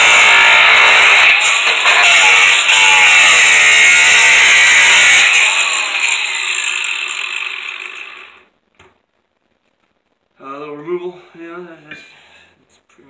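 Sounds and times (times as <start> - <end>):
power tool cutting aluminum: 0.0 - 8.4.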